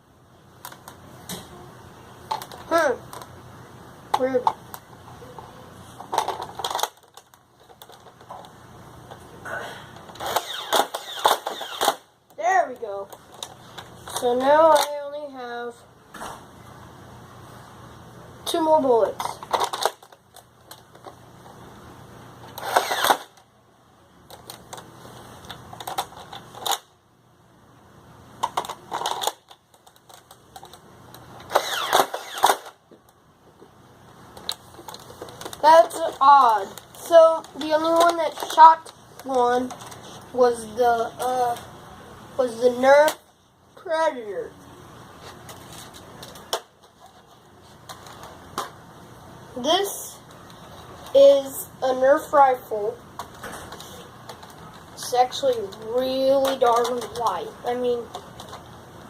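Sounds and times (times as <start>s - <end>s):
toy blaster clicking and rattling: 6.1s - 8.2s, 10.1s - 12.1s, 19.2s - 20.8s, 22.5s - 23.4s, 28.4s - 32.8s, 34.4s - 40.0s, 53.2s - 58.6s
toy blaster motor firing: 10.1s - 12.1s, 22.5s - 23.4s, 31.4s - 32.8s.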